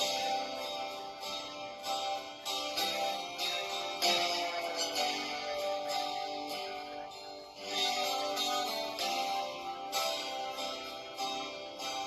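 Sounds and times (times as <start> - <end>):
instrumental music: 0.0 - 12.0.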